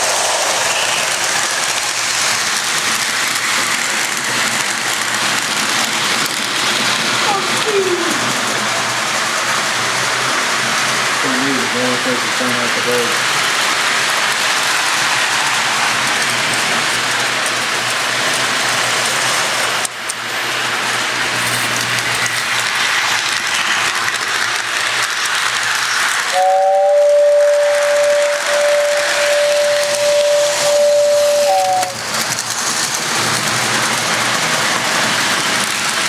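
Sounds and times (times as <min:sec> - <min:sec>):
model train running with hiss: 0:00.0 - 0:36.0
train whistle: 0:00.6 - 0:01.4, 0:26.3 - 0:32.1.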